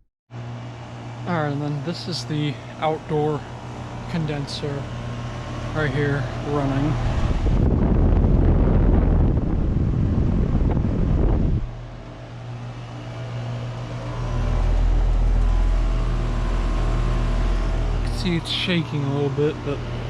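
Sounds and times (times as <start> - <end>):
air conditioner compressor humming: 0.3 - 20.0
low rumble: 4.0 - 20.0
rush of air: 7.0 - 11.8.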